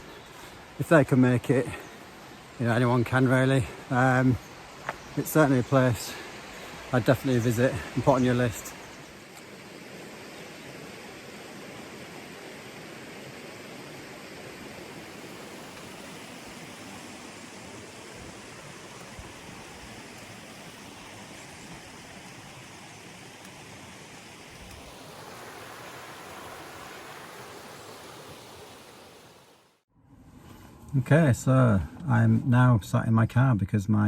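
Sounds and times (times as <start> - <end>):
stream and waterfall rushing: 0.0 - 29.8.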